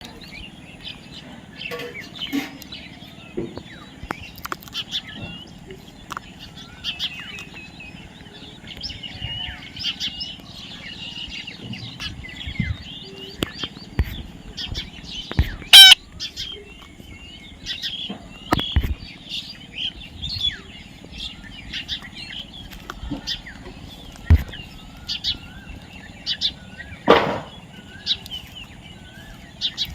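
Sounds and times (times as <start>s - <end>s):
parrots chirping and chattering: 0.0s - 29.9s
parrot shrill squawk: 15.7s - 16.0s.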